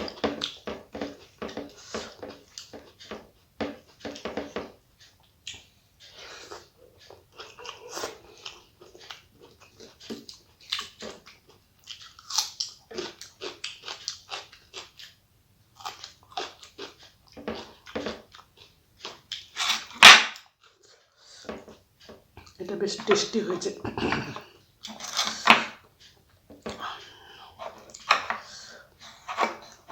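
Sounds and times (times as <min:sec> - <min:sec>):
person chewing food: 0:00.0 - 0:29.9
sharp crunch: 0:19.6 - 0:20.4.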